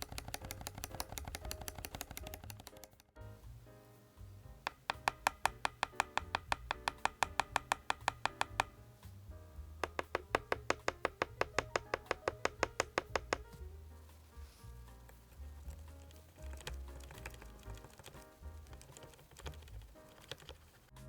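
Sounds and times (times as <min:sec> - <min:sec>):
clicky keyboard keystrokes: 0:00.0 - 0:03.1, 0:04.7 - 0:08.7, 0:09.8 - 0:13.6, 0:15.6 - 0:20.9
background music: 0:00.0 - 0:21.0.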